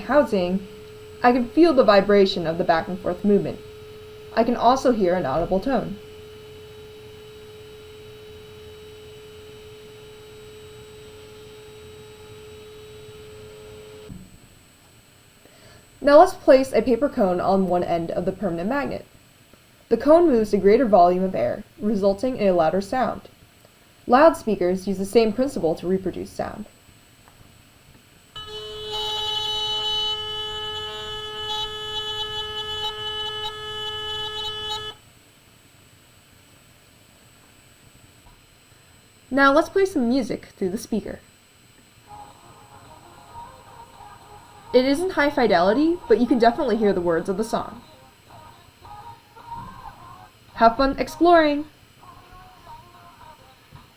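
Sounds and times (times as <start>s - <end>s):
steady vibrating magnet tone: 0.0s - 19.3s, 24.1s - 36.4s, 42.9s - 47.8s.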